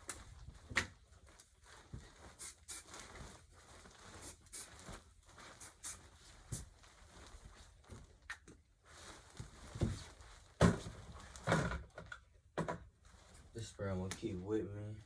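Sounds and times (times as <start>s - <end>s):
handling noises with knocks: 9.7s - 12.9s.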